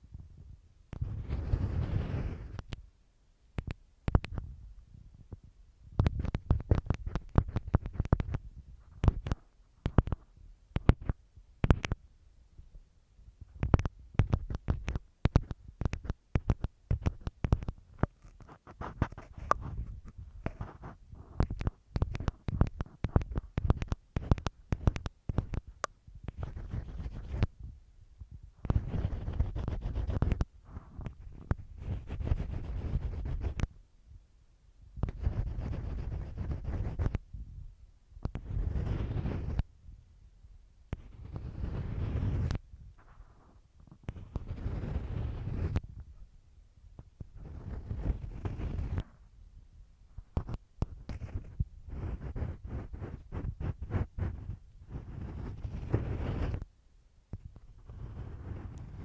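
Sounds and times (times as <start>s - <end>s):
ear pick scratching on tape: 0.9s - 2.8s, 3.6s - 4.5s, 6.0s - 12.0s, 13.6s - 27.6s, 28.6s - 33.8s, 35.0s - 37.3s, 38.2s - 39.7s, 40.9s - 46.0s, 47.2s - 49.2s, 50.2s - 56.7s, 57.4s - 59.0s.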